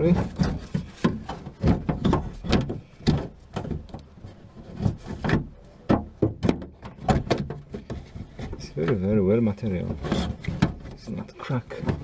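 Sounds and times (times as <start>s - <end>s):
door lock parts clicking and scraping: 6.4s - 12.0s.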